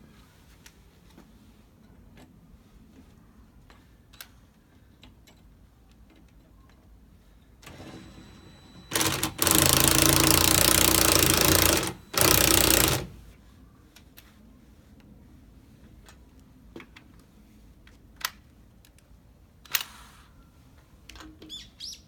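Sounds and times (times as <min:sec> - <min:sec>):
impact wrench hammering: 0:08.9 - 0:13.2.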